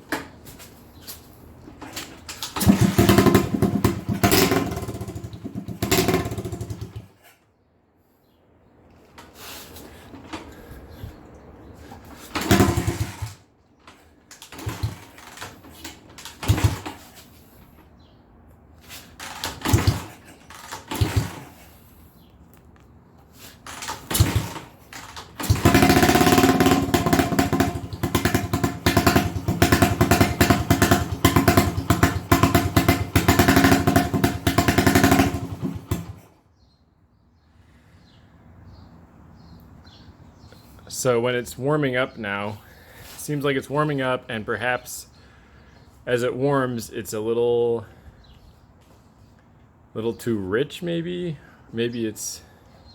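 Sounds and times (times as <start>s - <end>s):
motorcycle engine starting and running: 0.0s - 7.3s, 11.7s - 18.0s, 18.9s - 22.2s, 23.6s - 36.4s.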